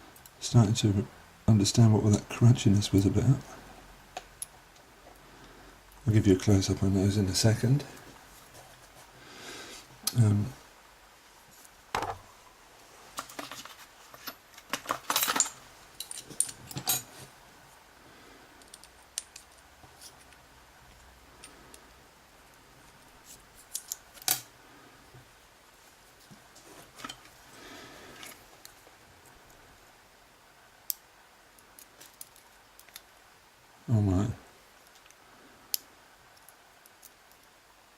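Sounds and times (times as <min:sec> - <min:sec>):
metal lock parts clicking: 0:14.2 - 0:17.1.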